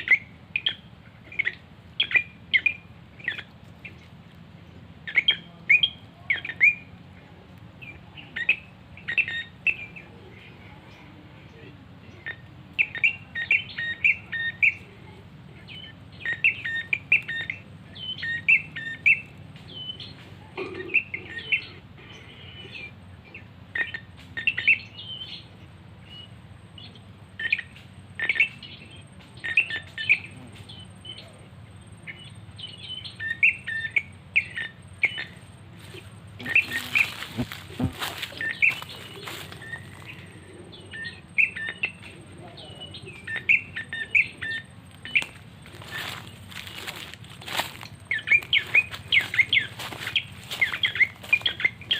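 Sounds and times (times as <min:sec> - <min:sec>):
bird chirping: 0:00.0 - 0:07.0, 0:07.8 - 0:51.9
handling rustle: 0:36.4 - 0:40.2, 0:45.2 - 0:51.5.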